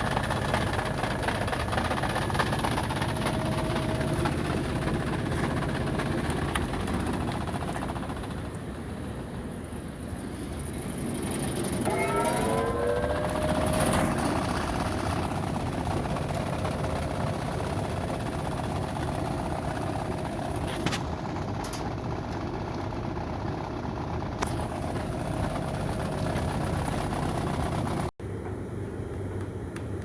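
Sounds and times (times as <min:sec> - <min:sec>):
ventilation fan rumbling: 0:00.0 - 0:30.0
faint whining tone: 0:02.1 - 0:17.8.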